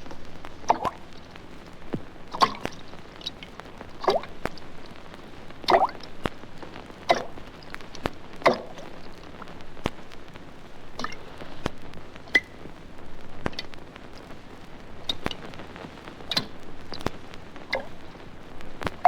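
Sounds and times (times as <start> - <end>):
sharp little ticks: 15.0 - 18.1.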